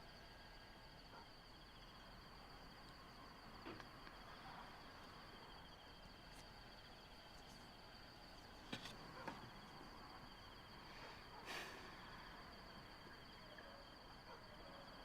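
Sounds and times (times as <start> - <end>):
insects chirring: 0.0 - 15.0.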